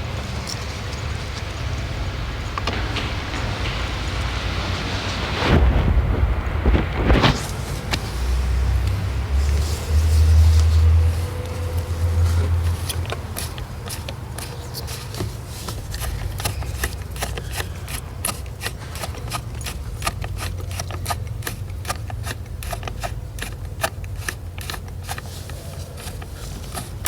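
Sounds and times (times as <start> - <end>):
steady low hum: 1.6 - 20.3
hand ratchet clicking: 11.4 - 27.0.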